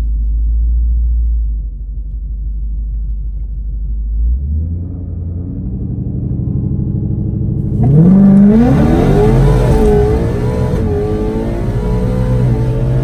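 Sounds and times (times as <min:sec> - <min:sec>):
supercharged engine revving: 0:07.6 - 0:13.0.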